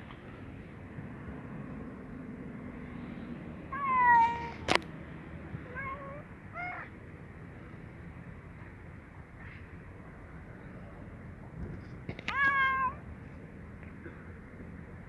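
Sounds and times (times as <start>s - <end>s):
cat meowing: 3.7s - 4.7s, 5.6s - 6.9s, 12.2s - 13.0s.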